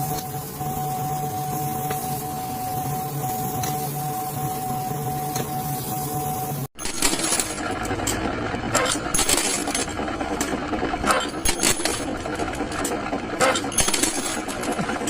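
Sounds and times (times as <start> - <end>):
machine rattling: 6.8 - 15.0.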